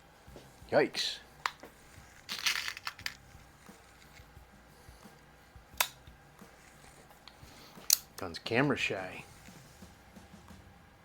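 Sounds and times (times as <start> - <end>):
pistol handling noise: 1.4 - 4.3, 5.2 - 8.3.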